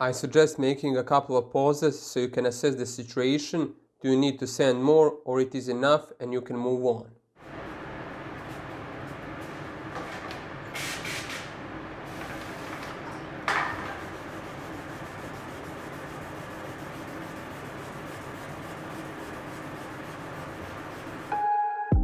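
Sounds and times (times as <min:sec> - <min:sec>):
short hissy bursts: 0:10.7 - 0:12.9
sandpaper rubbing scrub: 0:13.7 - 0:21.4.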